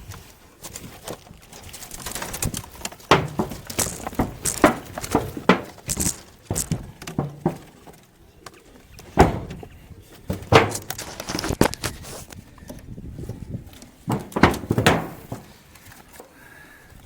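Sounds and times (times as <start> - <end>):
knocks and rattles of gear handled: 0.0 - 16.3.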